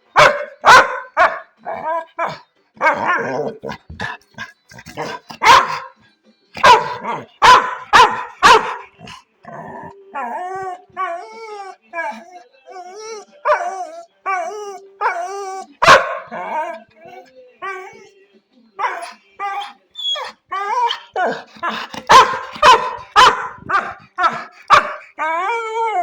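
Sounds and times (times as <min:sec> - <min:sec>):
dog barking: 0:00.0 - 0:03.6, 0:04.9 - 0:06.0, 0:06.6 - 0:09.2, 0:15.8 - 0:16.8, 0:18.8 - 0:25.2
dog whining: 0:00.2 - 0:03.7, 0:06.6 - 0:18.1, 0:18.8 - 0:26.0.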